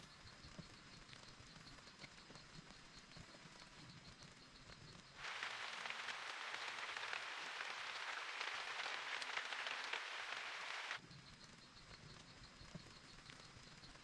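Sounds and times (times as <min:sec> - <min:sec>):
steady rain falling: 0:05.0 - 0:11.0.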